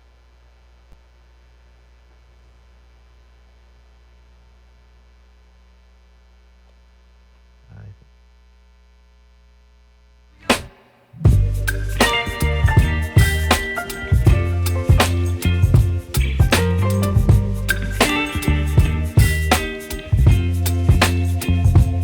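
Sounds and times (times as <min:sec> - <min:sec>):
music: 0:10.6 - 0:22.0.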